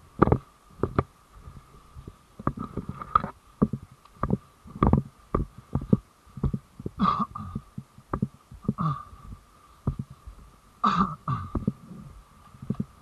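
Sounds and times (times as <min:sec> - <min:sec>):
footsteps thudding: 0:03.6 - 0:07.0, 0:07.6 - 0:10.1.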